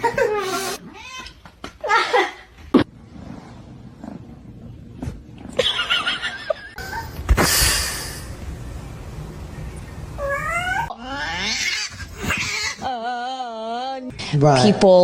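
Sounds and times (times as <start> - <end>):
cat calling: 10.2 - 12.9.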